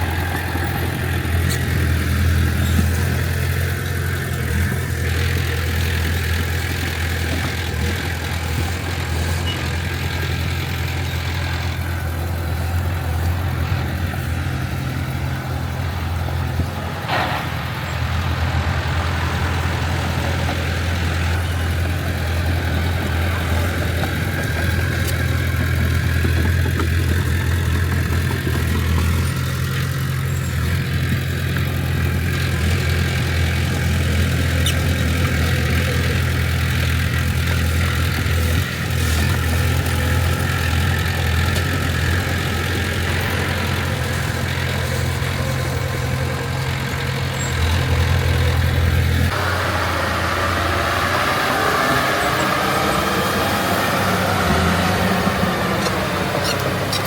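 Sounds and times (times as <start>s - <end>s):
diesel engine running: 0.0s - 57.0s.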